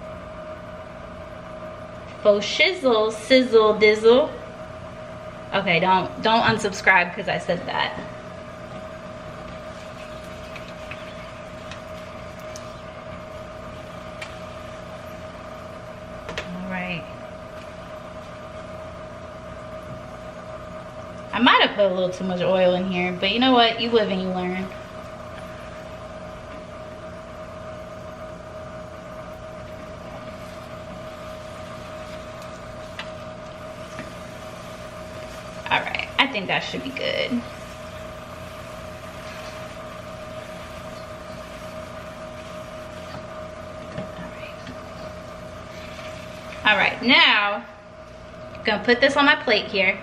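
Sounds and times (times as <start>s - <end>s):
steady appliance hum: 0.0s - 50.0s
tortilla frying in oil: 8.1s - 21.3s, 24.6s - 47.0s.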